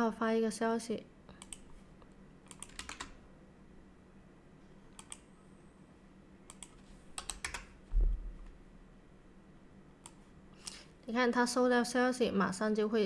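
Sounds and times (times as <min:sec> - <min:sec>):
keyboard typing: 0:02.4 - 0:03.2, 0:04.9 - 0:05.3, 0:06.5 - 0:07.8
low thump: 0:07.9 - 0:08.4.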